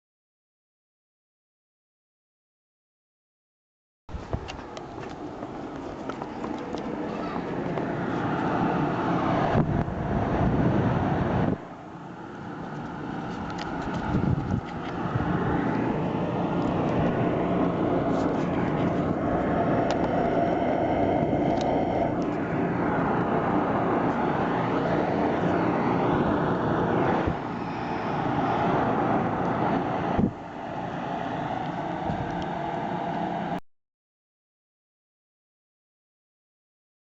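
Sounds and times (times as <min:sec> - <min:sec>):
gas furnace blower running: 0:04.2 - 0:33.6.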